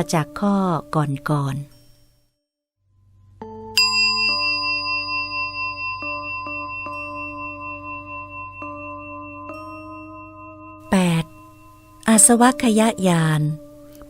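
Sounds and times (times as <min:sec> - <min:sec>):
bright high bell note: 0:03.4 - 0:13.2
bell-like chime music: 0:03.4 - 0:13.8.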